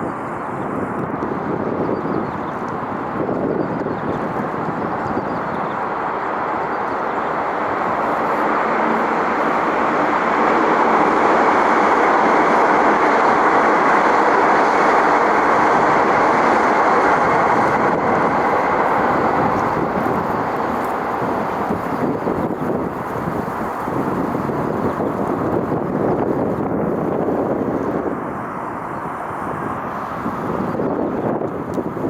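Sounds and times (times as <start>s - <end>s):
train passing: 0.0s - 32.0s.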